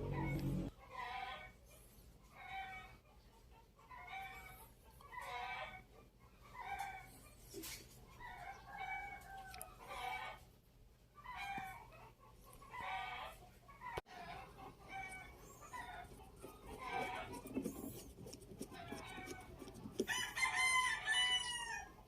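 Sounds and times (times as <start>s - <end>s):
chickens clucking: 11.2s - 18.0s.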